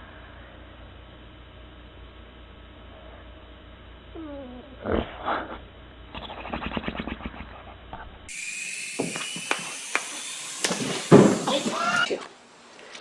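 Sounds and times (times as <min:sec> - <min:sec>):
low steady hum: 0:00.0 - 0:08.3
pet animal vocalizing: 0:04.2 - 0:07.8.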